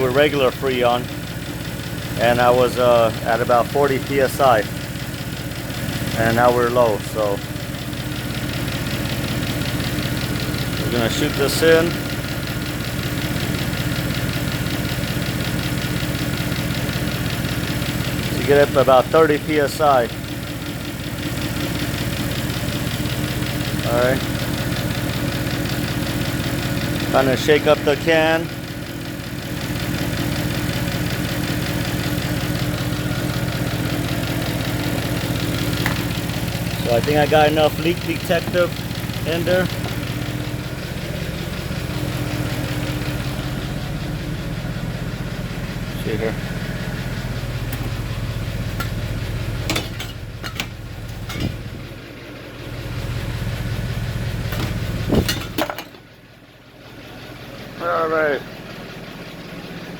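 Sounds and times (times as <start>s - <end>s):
car engine idling: 0.0s - 59.9s
air conditioning blowing: 32.0s - 52.2s, 54.4s - 56.0s.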